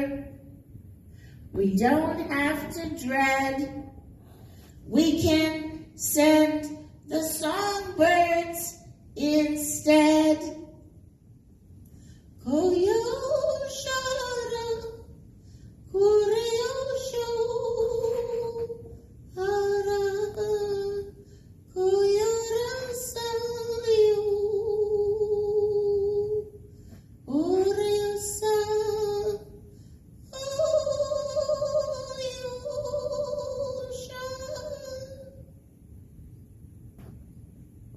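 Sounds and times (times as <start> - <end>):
woman singing wordless notes: 0.0 - 0.5, 1.6 - 4.0, 4.9 - 10.8, 12.4 - 15.2, 15.9 - 26.6, 27.3 - 29.7, 30.3 - 35.4.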